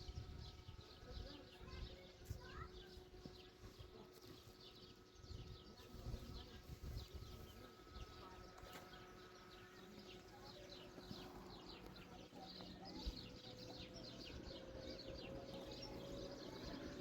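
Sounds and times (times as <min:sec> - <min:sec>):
low steady background: 0:00.0 - 0:17.0
small birds chirping: 0:00.0 - 0:17.0.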